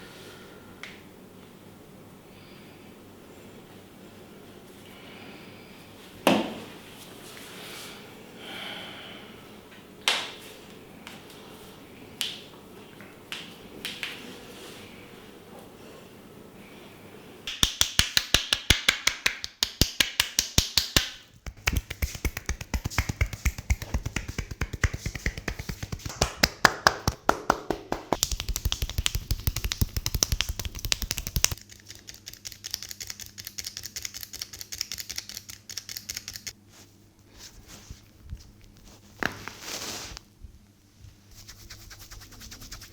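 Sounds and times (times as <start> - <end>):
hands slapping a body: 17.5 - 31.6.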